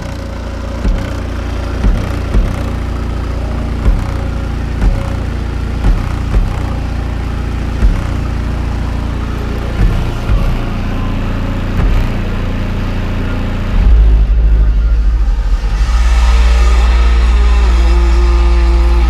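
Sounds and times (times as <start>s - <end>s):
bass-heavy music through subwoofers: 0.0s - 19.0s.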